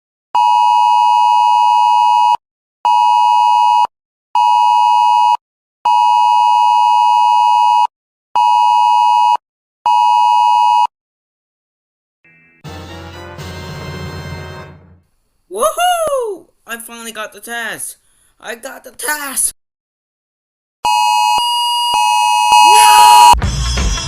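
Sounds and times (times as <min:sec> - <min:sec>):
harsh emergency alert tone: 0:20.8 - 0:23.4.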